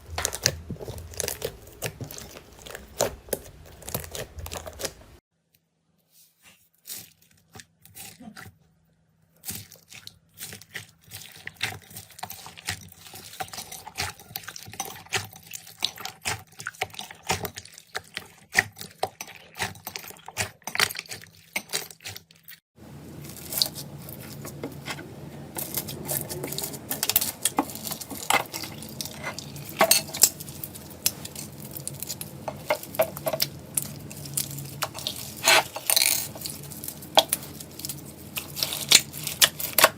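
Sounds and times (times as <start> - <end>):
slime crackling and popping: 0.1 - 5.2, 25.7 - 39.9
steady low hum: 22.8 - 39.9.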